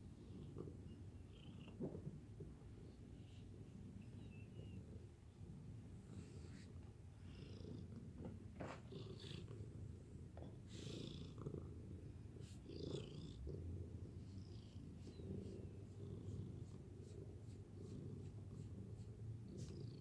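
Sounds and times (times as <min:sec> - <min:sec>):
cat purring: 0:00.0 - 0:20.0
soft rustling or scratching: 0:05.9 - 0:07.0, 0:14.3 - 0:20.0.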